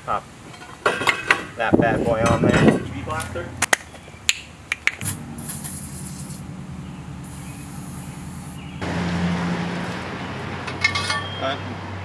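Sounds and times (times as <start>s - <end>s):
low machine hum: 2.2s - 10.5s
rushing noise: 5.0s - 9.9s.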